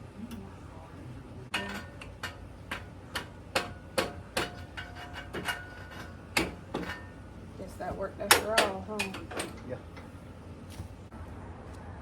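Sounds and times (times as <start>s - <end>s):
metal-on-metal taps ringing: 1.5s - 7.2s, 7.9s - 10.1s.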